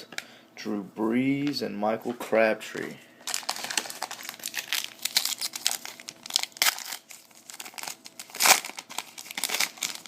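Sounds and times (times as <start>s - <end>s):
card pack wrapper crinkling: 3.2s - 10.0s.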